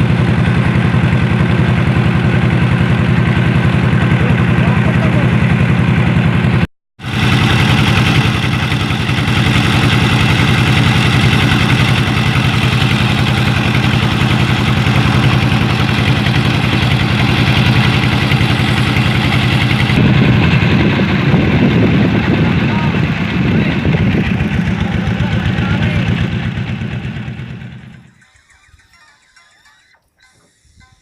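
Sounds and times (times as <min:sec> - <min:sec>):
vehicle engine running: 0:00.0 - 0:31.0.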